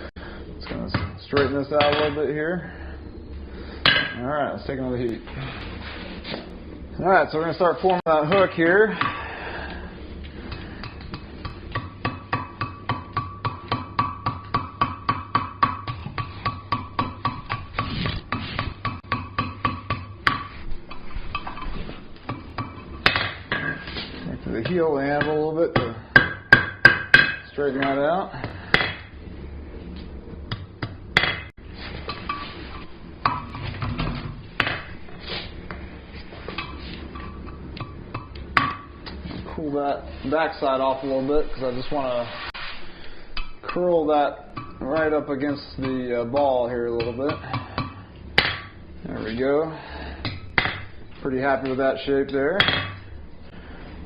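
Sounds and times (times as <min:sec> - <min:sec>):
steady low hum: 0:00.0 - 0:54.0
hammer striking iron on anvil: 0:03.8 - 0:04.2, 0:10.5 - 0:17.8, 0:18.6 - 0:20.5, 0:22.3 - 0:23.9, 0:24.6 - 0:28.0, 0:28.7 - 0:29.1, 0:30.5 - 0:31.5, 0:45.8 - 0:48.8, 0:50.2 - 0:50.9, 0:52.6 - 0:53.0.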